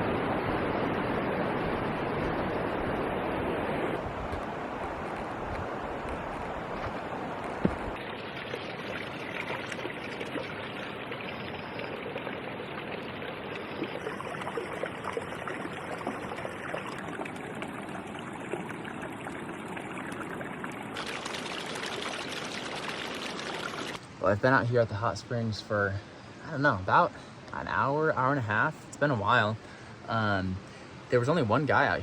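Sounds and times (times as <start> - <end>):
running water trickling and pouring: 4.0 - 24.0.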